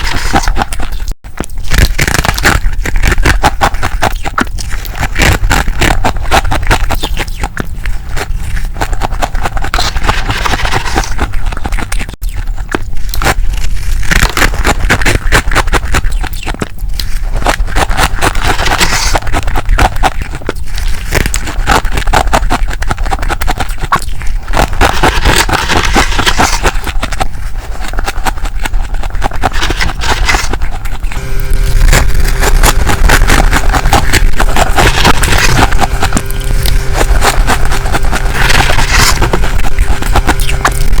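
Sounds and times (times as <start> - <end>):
frost crunching and scraping: 0.0 - 41.0
low steady hum: 29.2 - 41.0.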